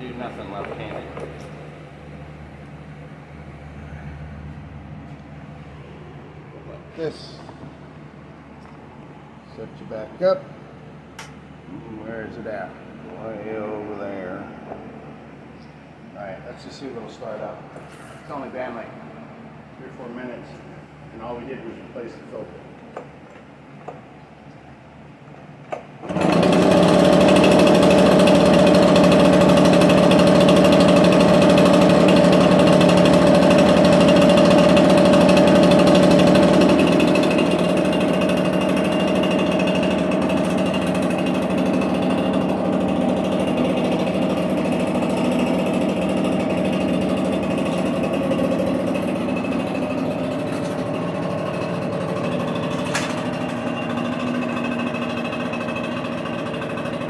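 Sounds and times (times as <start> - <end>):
leaf blower engine running: 0.0 - 4.8, 26.0 - 57.0.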